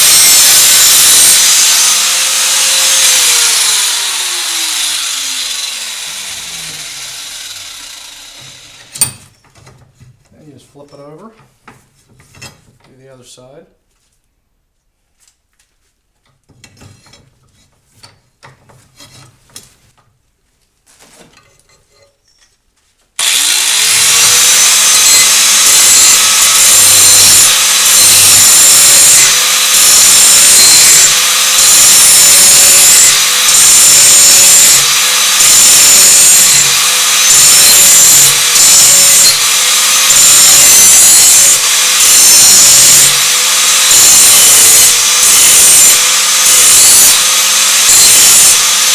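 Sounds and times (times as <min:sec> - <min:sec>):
power grinder grinding metal: 0:00.0 - 0:09.1, 0:23.2 - 0:48.9.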